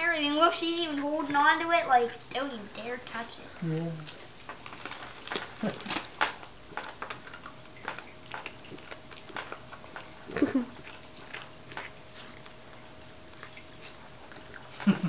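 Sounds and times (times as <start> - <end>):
dog crunching a cookie: 4.0 - 15.0.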